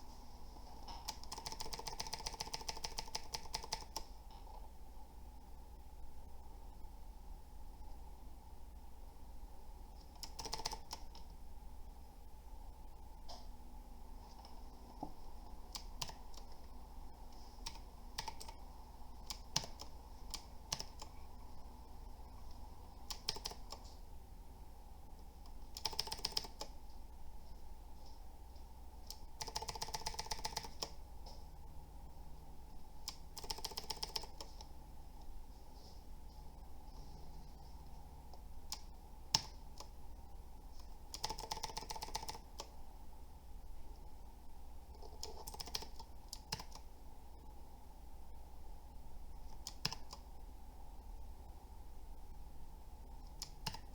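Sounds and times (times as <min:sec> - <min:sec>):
clicky mechanical keyboard typing: 0:00.8 - 0:04.7, 0:10.0 - 0:11.3, 0:15.7 - 0:16.7, 0:17.6 - 0:18.6, 0:19.2 - 0:21.3, 0:23.0 - 0:24.0, 0:25.4 - 0:26.8, 0:29.1 - 0:31.0, 0:33.0 - 0:34.7, 0:38.7 - 0:40.0, 0:40.8 - 0:42.8, 0:44.9 - 0:46.9, 0:49.5 - 0:50.2, 0:53.3 - 0:53.9.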